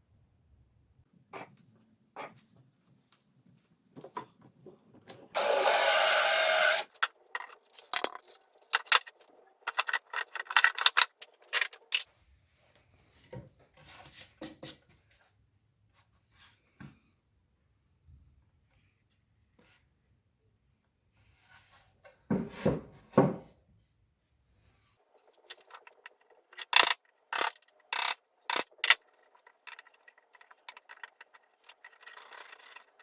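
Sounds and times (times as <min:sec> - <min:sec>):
tools clicking and knocking: 0:06.6 - 0:12.1, 0:25.3 - 0:33.0.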